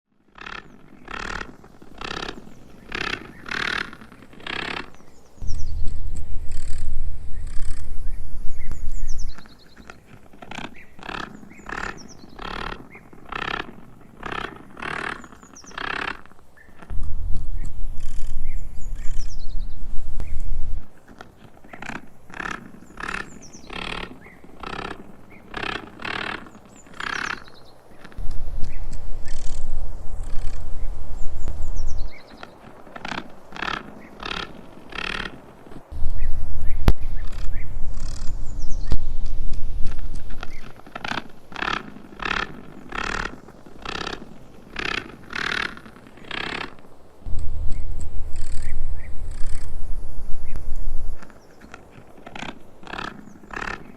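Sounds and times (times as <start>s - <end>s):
spider stridulation rasps: 0.1s - 53.9s
loud deep rumble: 5.4s - 9.4s, 16.9s - 20.9s, 28.2s - 32.2s, 35.9s - 40.7s, 47.2s - 51.2s.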